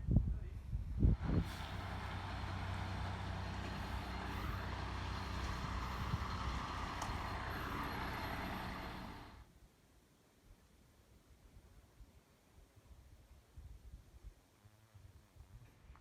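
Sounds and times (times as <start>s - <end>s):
vehicle engine running: 1.1s - 9.4s.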